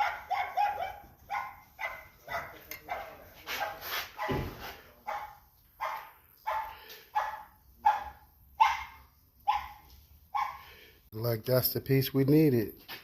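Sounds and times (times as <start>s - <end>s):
dog barking: 0.0s - 10.7s.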